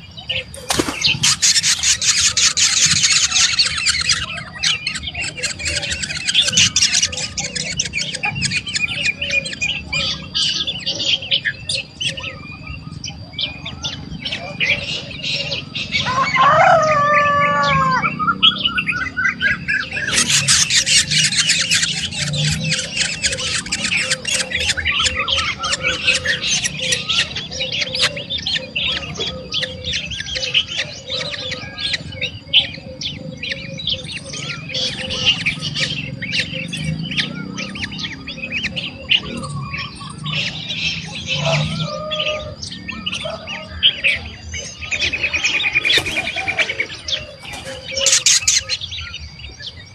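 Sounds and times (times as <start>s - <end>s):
falling whistled bird calls: 0.0s - 49.9s
small birds chirping: 0.0s - 49.9s.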